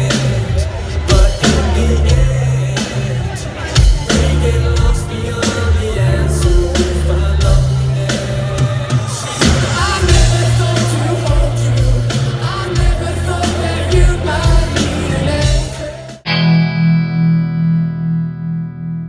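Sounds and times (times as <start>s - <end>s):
steady drum beat: 0.0s - 16.2s
person singing: 0.0s - 16.6s
electric guitar: 0.0s - 19.0s
sustained guitar chord ringing: 16.3s - 19.0s.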